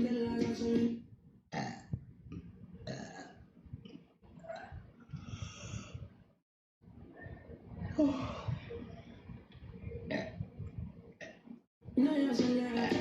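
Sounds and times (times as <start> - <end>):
woman breathy sighs: 7.9 - 8.8.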